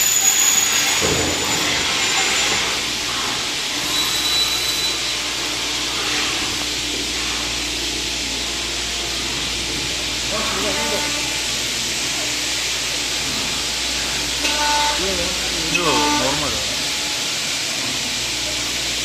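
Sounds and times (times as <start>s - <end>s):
machine hissing whir: 0.0s - 19.0s
short high tone: 14.6s - 16.6s.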